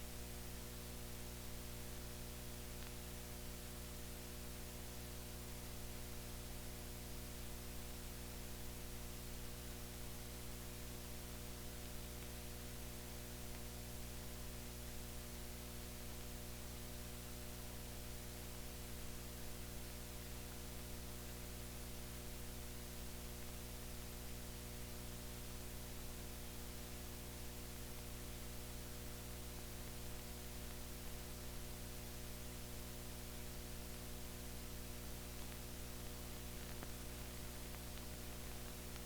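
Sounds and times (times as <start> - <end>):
electrical mains hum: 0.0 - 39.0
film hiss: 27.8 - 39.0.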